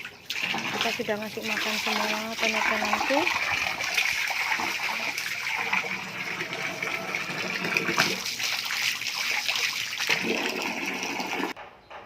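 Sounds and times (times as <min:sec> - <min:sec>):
water pouring from a hose: 0:00.0 - 0:11.6.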